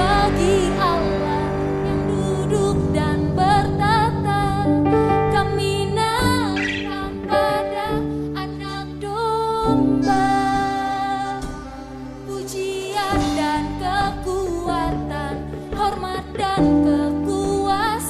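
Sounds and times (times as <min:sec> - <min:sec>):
held chords and bass notes: 0:00.0 - 0:18.0
person singing with vibrato: 0:00.0 - 0:18.0.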